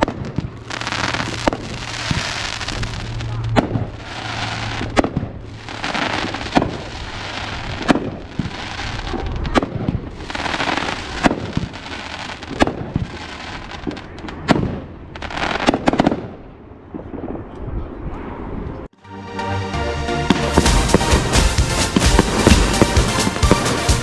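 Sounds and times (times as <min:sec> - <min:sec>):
firework hiss: 0:00.0 - 0:09.4, 0:10.0 - 0:14.0, 0:20.5 - 0:24.0
firework bangs: 0:00.0 - 0:17.4, 0:20.5 - 0:24.0.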